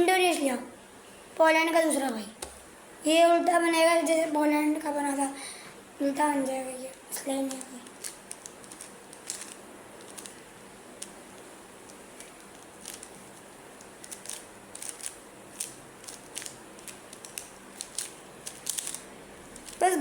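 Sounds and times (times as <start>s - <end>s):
puzzle cube plastic clicks: 7.4s - 10.4s, 11.0s - 19.8s.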